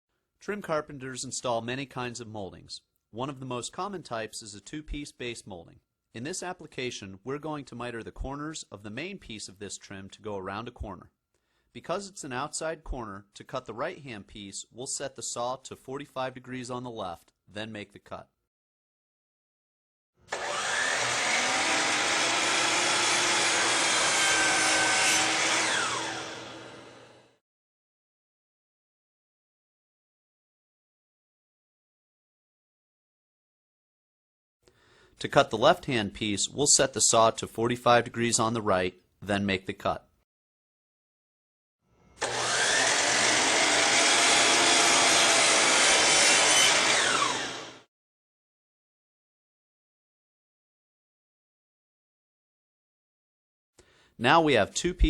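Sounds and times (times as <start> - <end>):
miter saw cutting wood: 20.3 - 27.4, 42.2 - 47.9.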